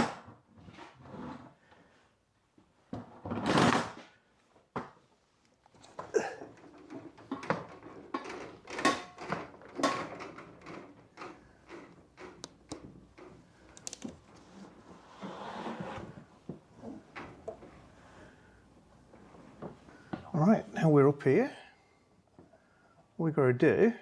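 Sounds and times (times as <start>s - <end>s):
wooden knocks and clatters: 6.0s - 14.9s.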